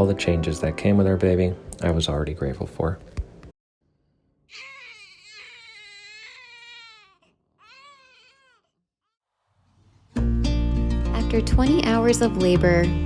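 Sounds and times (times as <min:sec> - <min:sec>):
newborn baby crying: 0:04.5 - 0:09.2.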